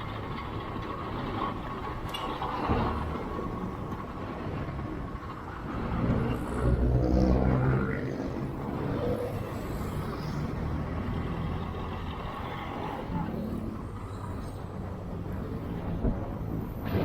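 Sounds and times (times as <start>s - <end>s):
city road traffic: 0.0s - 17.0s
vehicle engine accelerating: 5.5s - 17.0s.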